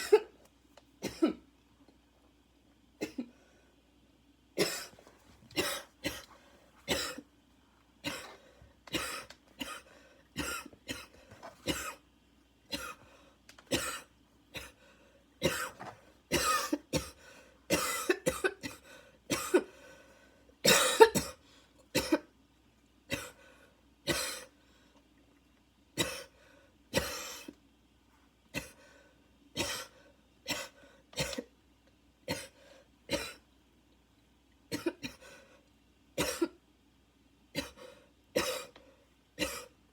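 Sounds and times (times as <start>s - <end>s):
person barking coughs: 1.0s - 1.4s, 15.4s - 19.7s, 20.7s - 21.4s, 22.0s - 22.3s, 38.4s - 38.7s, 39.4s - 39.7s.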